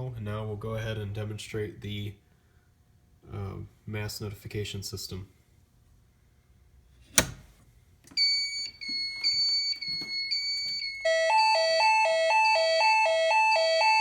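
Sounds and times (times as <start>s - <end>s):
sharp click: 7.1s - 7.5s.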